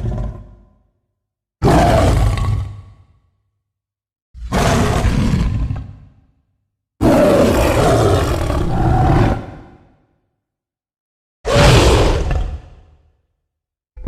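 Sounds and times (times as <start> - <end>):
monster roar: 1.6 - 3.0, 7.0 - 9.8, 11.5 - 12.7.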